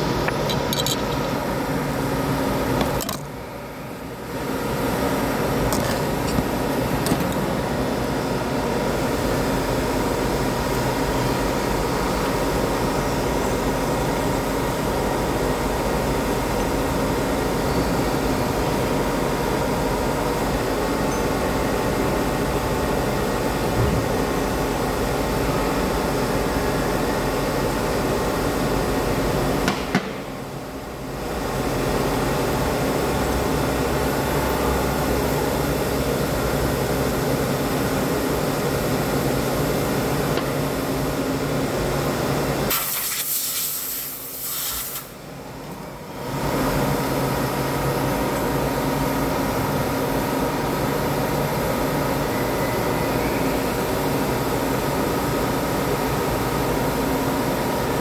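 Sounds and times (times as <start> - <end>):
short hiss: 42.7 - 45.1.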